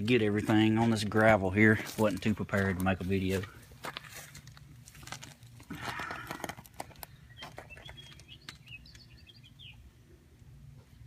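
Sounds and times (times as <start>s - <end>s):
footsteps crunching on gravel: 0.0s - 8.8s
low steady hum: 0.0s - 11.0s
bird chirps: 7.0s - 9.9s.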